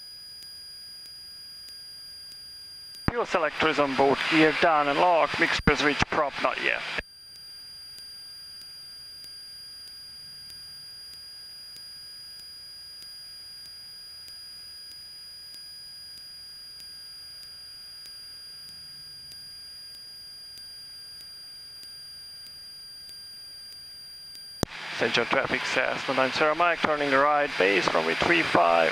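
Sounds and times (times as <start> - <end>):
high-pitched whines: 0.0 - 28.9
electrical hiss: 3.4 - 7.0
faint tick: 7.0 - 24.7.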